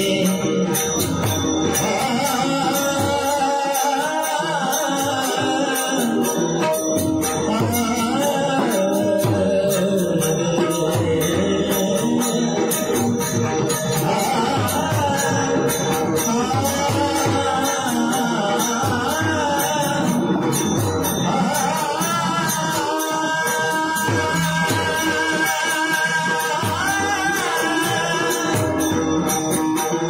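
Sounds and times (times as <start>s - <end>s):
devotional singing: 0.0s - 29.5s
jingling hand cymbals: 0.0s - 30.0s.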